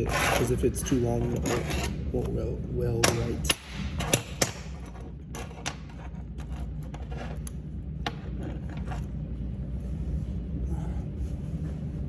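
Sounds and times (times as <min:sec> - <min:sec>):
clicks and scrapes of metal: 0:00.0 - 0:02.0, 0:04.0 - 0:09.1
steady low hum: 0:00.0 - 0:12.0.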